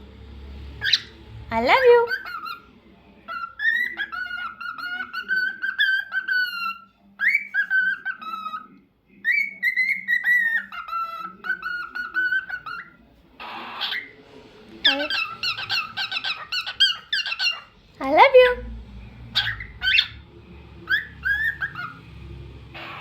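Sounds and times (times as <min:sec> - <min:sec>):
cockatiel whistling a tune: 0:03.3 - 0:14.1, 0:20.8 - 0:22.0.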